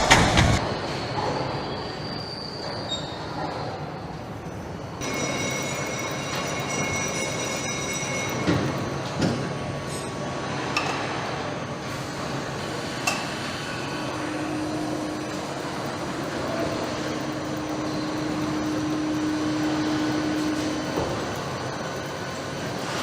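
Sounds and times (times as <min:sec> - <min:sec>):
machinery running: 0:00.0 - 0:00.7, 0:05.0 - 0:10.7, 0:11.6 - 0:23.0
thin high whines: 0:13.7 - 0:23.0.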